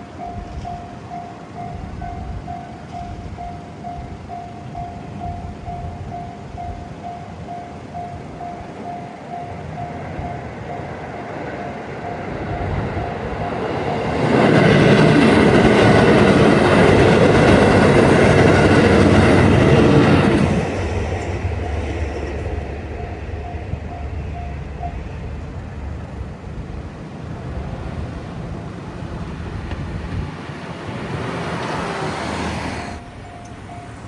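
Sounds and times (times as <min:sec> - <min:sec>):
level-crossing warning bell: 0:00.0 - 0:26.1, 0:32.9 - 0:34.0
train passing loudly: 0:00.0 - 0:34.0.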